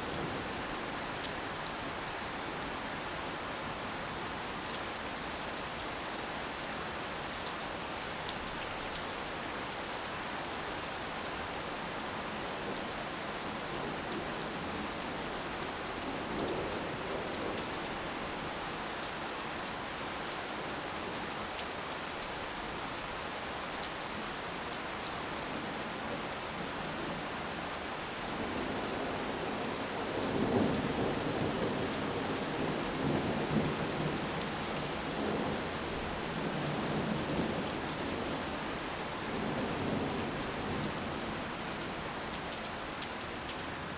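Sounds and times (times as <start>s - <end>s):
heavy rain: 0.0s - 43.9s.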